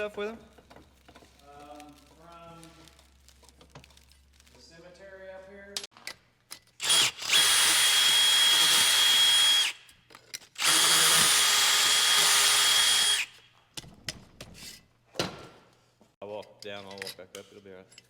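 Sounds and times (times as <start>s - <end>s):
power tool motor whining: 6.8s - 9.8s, 10.6s - 13.3s.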